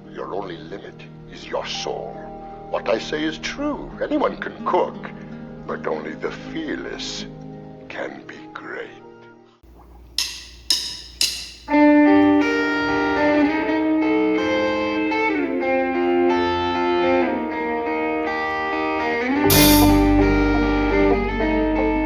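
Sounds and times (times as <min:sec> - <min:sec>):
sustained chords: 0:10.2 - 0:22.0
sharp musical hits: 0:19.5 - 0:20.5
cymbal crash: 0:19.5 - 0:20.7.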